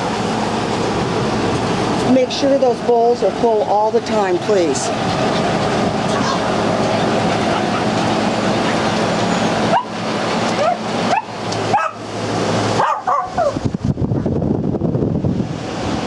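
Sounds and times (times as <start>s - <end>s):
small dogs yipping: 9.3s - 12.0s, 12.8s - 13.6s.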